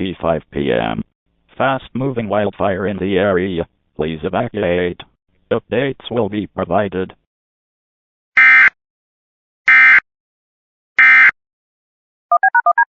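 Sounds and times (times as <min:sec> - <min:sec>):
digital data tones: 0:12.3 - 0:12.9
short beeps at changing pitches: 0:12.3 - 0:12.9.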